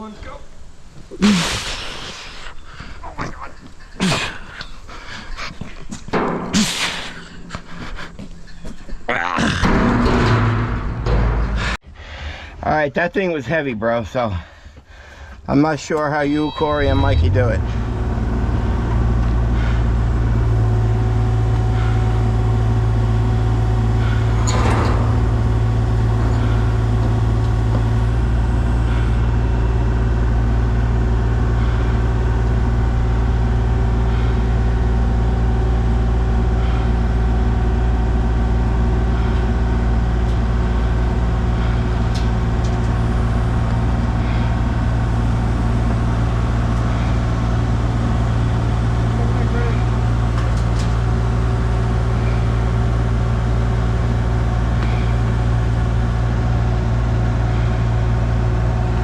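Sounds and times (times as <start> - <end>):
metallic clank: 8.4 - 11.8
excavator diesel engine running: 15.6 - 59.0.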